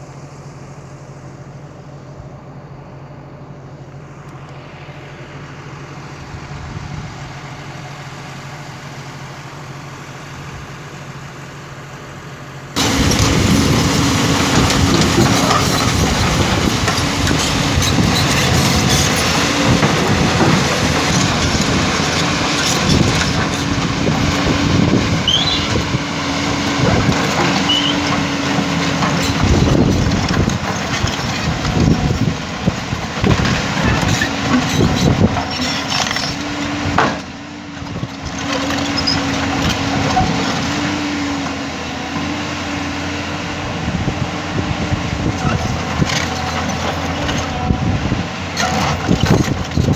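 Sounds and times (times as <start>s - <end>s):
diesel engine running: 0.0s - 49.9s
machine clatter: 12.8s - 24.5s.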